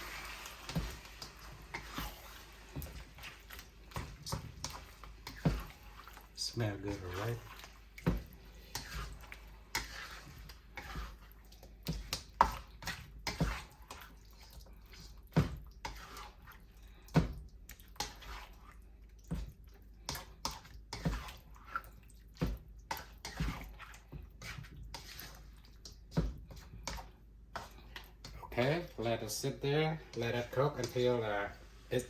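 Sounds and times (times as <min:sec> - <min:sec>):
utensil scraping pan: 0:00.0 - 0:17.3, 0:17.9 - 0:19.5, 0:20.1 - 0:21.9, 0:22.9 - 0:32.0
sauce squelching: 0:00.0 - 0:29.2.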